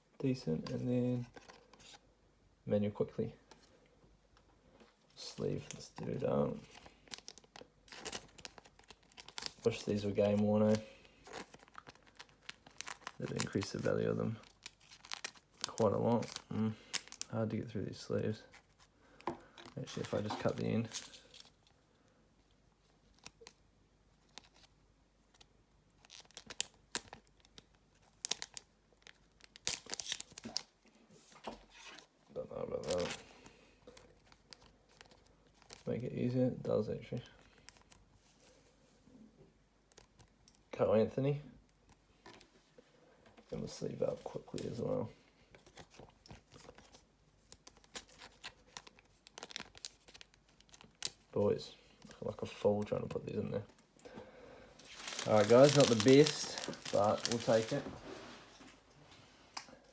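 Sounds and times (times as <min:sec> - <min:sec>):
plastic sleeve crinkling: 0:05.2 - 0:21.7, 0:25.3 - 0:30.8, 0:31.9 - 0:36.1, 0:45.6 - 0:53.7, 0:54.8 - 0:58.7.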